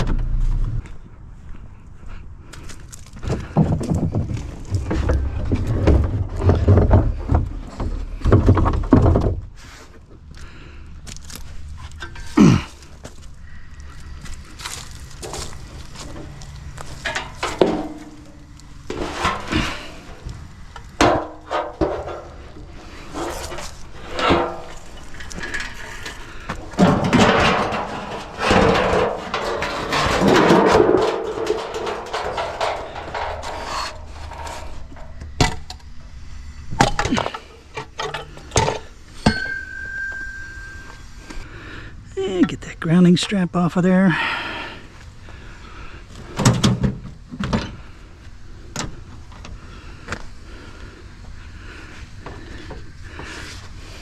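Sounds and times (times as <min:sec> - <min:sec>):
scrap clattering: 0:02.9 - 0:10.0, 0:11.2 - 0:41.5
scrap metal knocking and clanking: 0:03.2 - 0:09.8, 0:11.3 - 0:13.2, 0:13.8 - 0:41.4.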